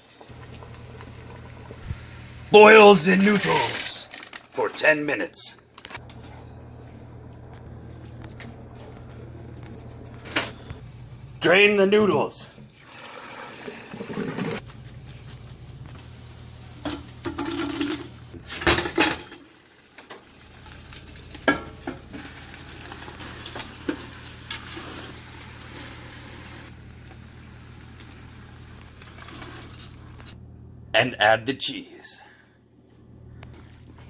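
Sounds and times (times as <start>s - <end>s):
steady low hum: 5.5s - 12.8s, 14.6s - 18.5s, 25.2s - 34.0s
pots and pans clanking: 16.8s - 20.2s, 21.3s - 25.1s.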